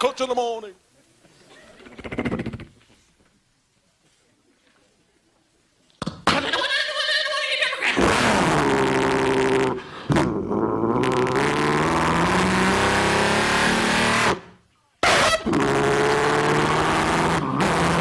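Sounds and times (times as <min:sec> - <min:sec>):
man imitating engine drone: 0:08.0 - 0:12.0.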